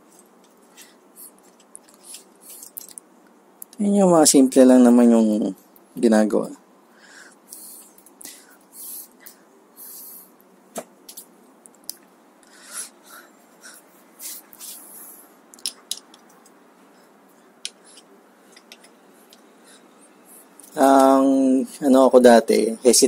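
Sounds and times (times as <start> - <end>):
faint rubbing and hissing: 0.0 - 3.2, 6.9 - 11.4, 12.4 - 23.0.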